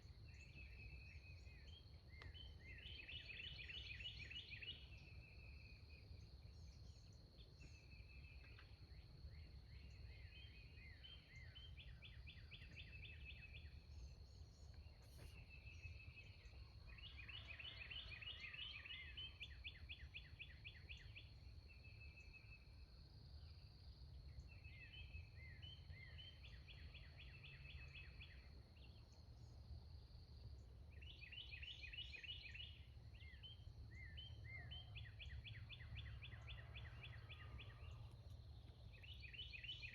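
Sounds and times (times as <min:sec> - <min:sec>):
faint songbirds trilling: 0:00.0 - 0:39.9.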